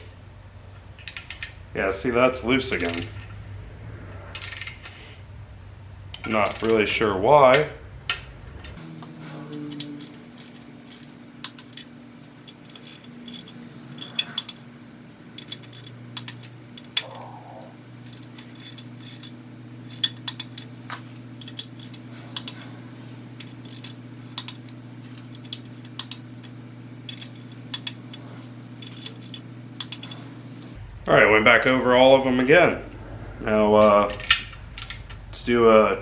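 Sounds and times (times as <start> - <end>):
steady low hum: 8.8 - 30.8
torque wrench clicks: 8.8 - 30.8.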